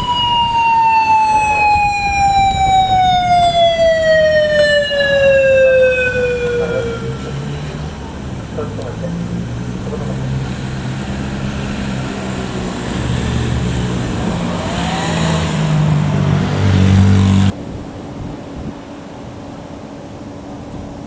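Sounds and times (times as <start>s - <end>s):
road and wind noise: 0.0s - 21.0s
motor vehicle engine running: 1.6s - 17.6s.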